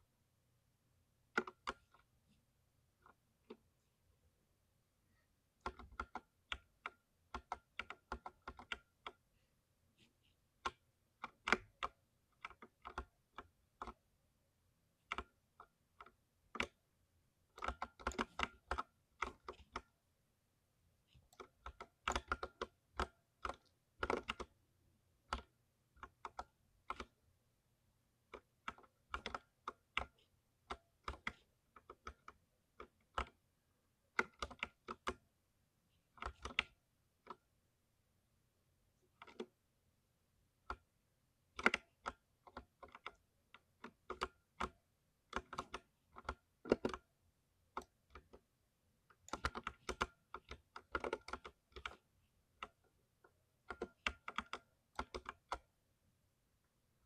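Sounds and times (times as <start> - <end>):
mechanical keyboard typing: 5.6 - 9.2, 10.6 - 14.0, 17.6 - 19.9, 21.3 - 24.5, 28.3 - 33.4, 34.2 - 35.2, 36.1 - 37.4, 39.2 - 39.5, 43.8 - 47.1, 49.2 - 52.0, 53.6 - 55.7.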